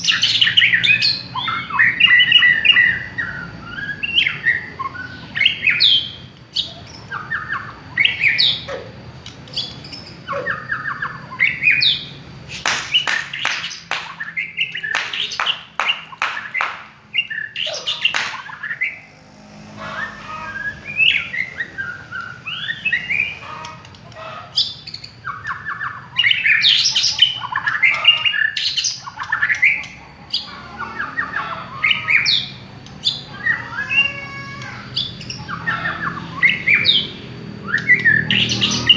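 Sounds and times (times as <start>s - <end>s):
harsh bird clicking notes: 12.5s - 17.0s, 18.0s - 18.5s.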